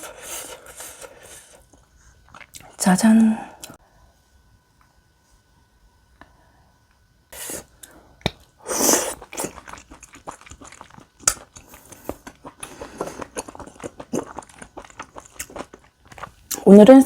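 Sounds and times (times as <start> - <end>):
loud bites and wet chewing: 8.2 - 16.6.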